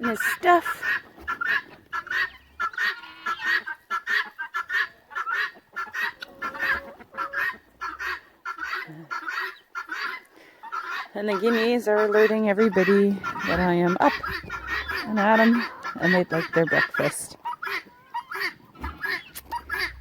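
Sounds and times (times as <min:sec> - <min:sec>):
guinea fowl calling: 0:00.0 - 0:20.0.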